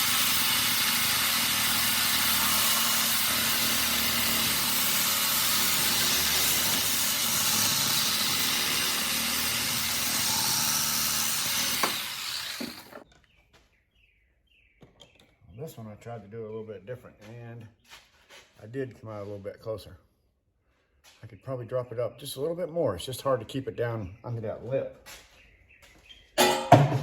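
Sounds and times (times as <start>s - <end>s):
power saw cutting metal: 0.0s - 13.0s.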